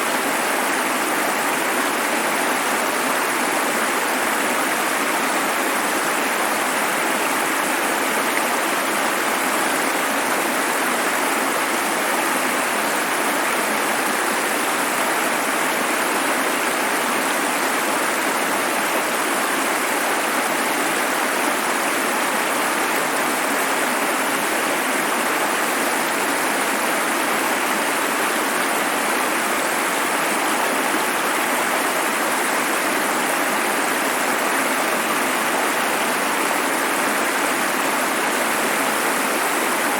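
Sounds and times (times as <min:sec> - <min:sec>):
running water: 0:00.0 - 0:39.9.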